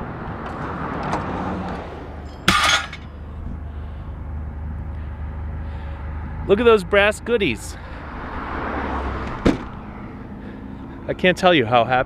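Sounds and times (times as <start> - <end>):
metal clink with ringing: 2.2 - 3.1.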